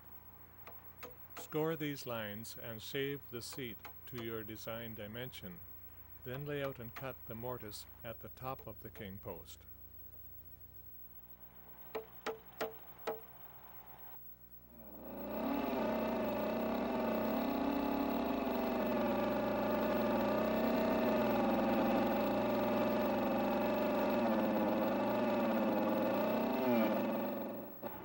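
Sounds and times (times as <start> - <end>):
power tool cutting timber: 14.8 - 28.0.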